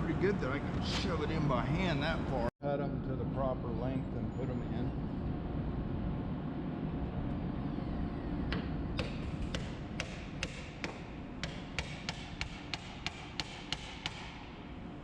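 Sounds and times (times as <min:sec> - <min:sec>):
steady low rumble: 0:00.0 - 0:10.0.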